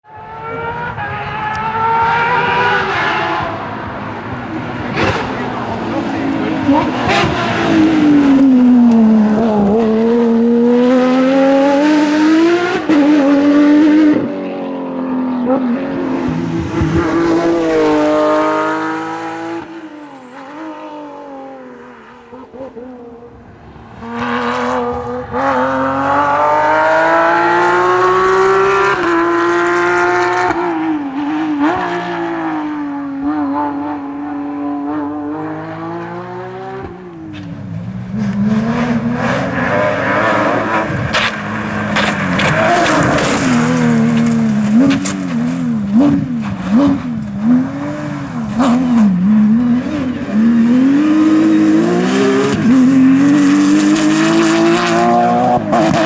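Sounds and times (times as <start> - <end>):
rally car engine revving: 0.0 - 56.0
engine cracks and pops: 40.8 - 47.4.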